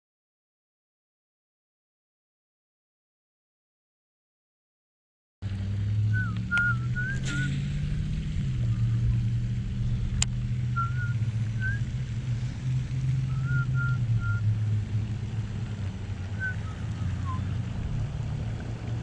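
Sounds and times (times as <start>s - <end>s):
low motor hum: 5.4s - 19.0s.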